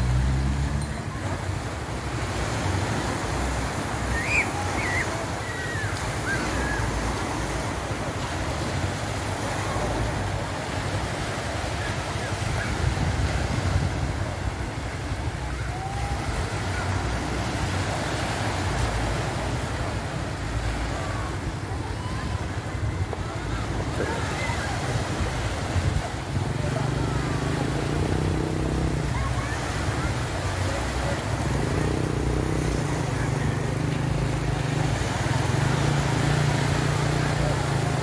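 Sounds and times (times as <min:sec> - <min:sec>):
sea waves washing on a beach: 0:00.0 - 0:38.0
wind rumbling on microphone: 0:12.2 - 0:18.1.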